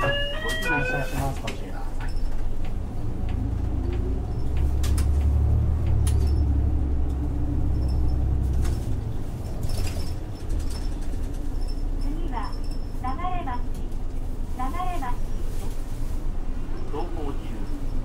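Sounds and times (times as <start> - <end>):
bus engine drone: 0.0 - 18.0
body rattles and knocks: 7.7 - 14.2.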